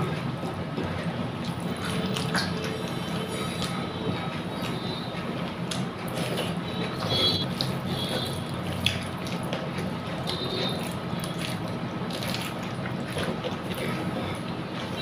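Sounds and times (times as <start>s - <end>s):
wet eating and chewing: 0.0s - 15.0s.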